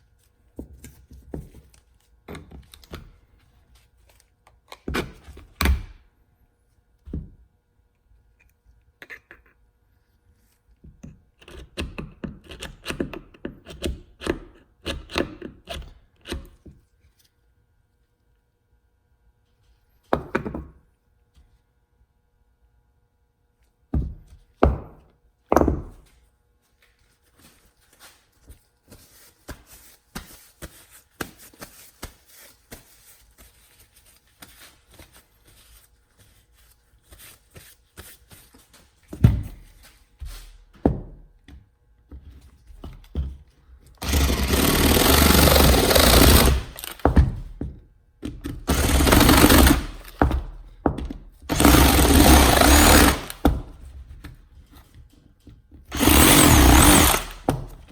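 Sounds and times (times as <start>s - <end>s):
reciprocating saw cutting steel: 44.0s - 47.1s, 48.7s - 50.2s, 51.5s - 53.5s, 55.9s - 57.6s.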